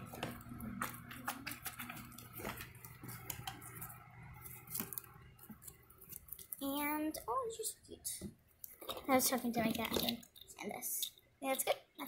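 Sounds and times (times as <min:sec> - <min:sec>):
faint steady hum: 0:00.0 - 0:12.0
plastic toys clicking and tapping: 0:08.6 - 0:12.0.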